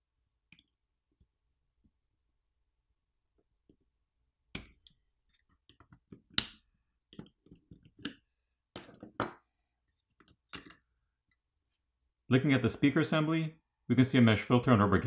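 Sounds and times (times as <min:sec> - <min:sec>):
plastic parts clicking and knocking: 0:05.6 - 0:09.5, 0:10.1 - 0:10.8.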